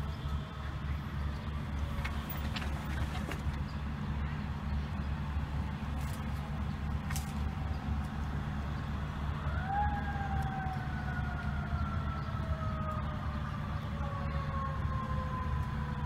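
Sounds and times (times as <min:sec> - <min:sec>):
steady low rumble: 0:00.0 - 0:16.0
fire engine siren wailing: 0:08.5 - 0:16.0.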